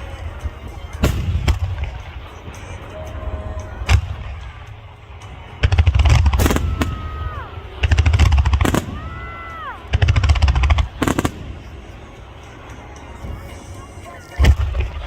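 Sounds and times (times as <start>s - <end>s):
rapid crackling fireworks: 0.0s - 15.0s
firework bang: 5.3s - 11.7s.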